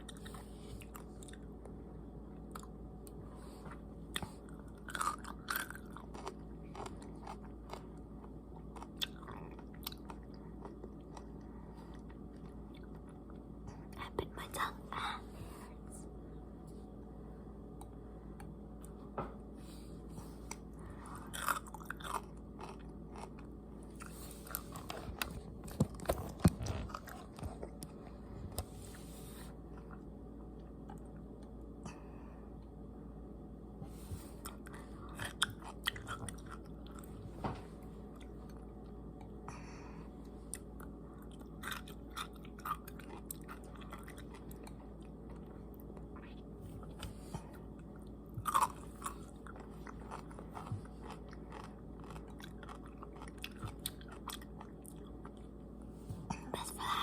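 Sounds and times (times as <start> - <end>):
steady low hum: 0.0 - 57.0
chewing pickles crunching: 4.1 - 14.7, 20.4 - 28.7, 34.4 - 37.2, 38.0 - 39.4, 40.5 - 55.7.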